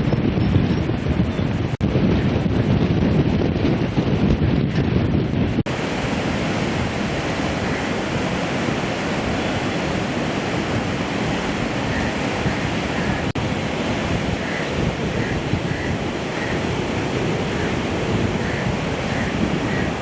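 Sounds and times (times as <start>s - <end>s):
wind buffeting microphone: 0.0s - 20.0s
water rushing: 5.6s - 20.0s.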